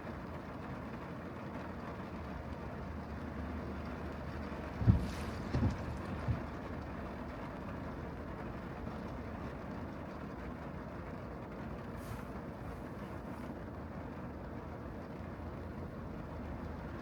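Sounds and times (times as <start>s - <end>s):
car tyres on wet road: 0.2s - 17.0s
short low thump: 4.6s - 6.6s.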